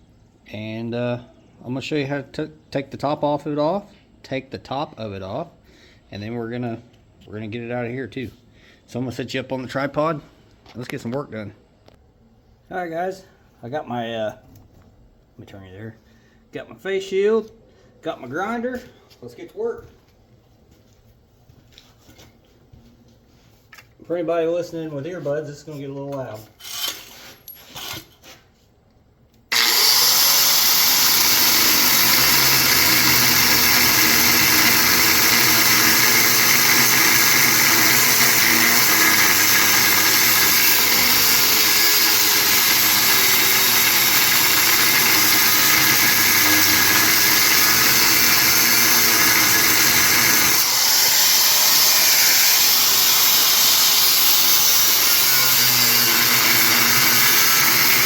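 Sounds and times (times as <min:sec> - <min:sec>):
angle grinder cutting metal: 0:29.5 - 0:58.0.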